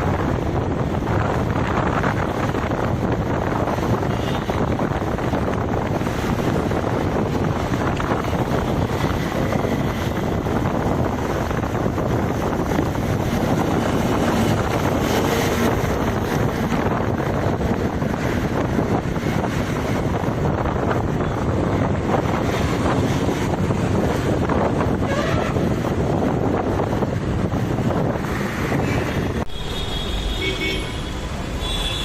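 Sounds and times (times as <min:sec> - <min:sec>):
wind buffeting microphone: 0:00.0 - 0:29.6.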